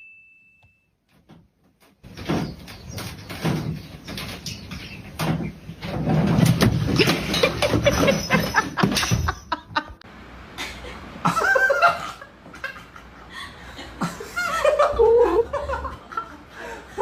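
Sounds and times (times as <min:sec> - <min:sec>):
rapid clatter of knocks: 0:01.3 - 0:09.6
person laughing: 0:07.0 - 0:10.0, 0:10.6 - 0:17.0.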